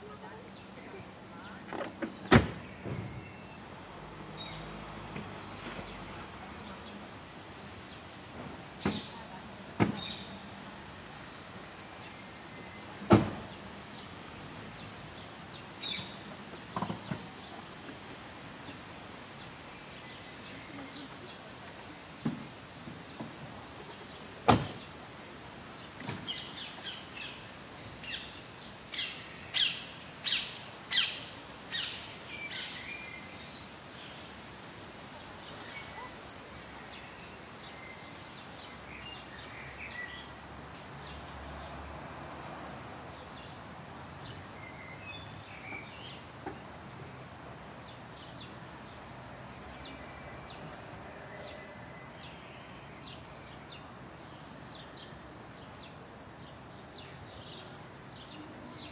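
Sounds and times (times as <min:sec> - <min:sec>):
low background hiss: 0:00.0 - 0:58.9
birds calling: 0:08.8 - 0:41.8.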